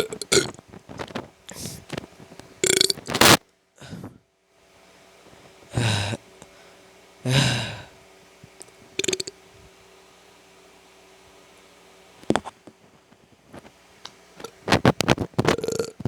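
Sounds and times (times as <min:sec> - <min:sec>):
person breathing and gasping: 0:01.5 - 0:01.9, 0:03.8 - 0:04.2, 0:05.7 - 0:08.0.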